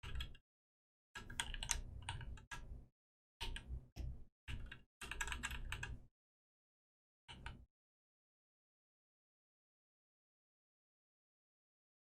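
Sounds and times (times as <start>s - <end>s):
keyboard keys clicking: 4.5s - 6.0s.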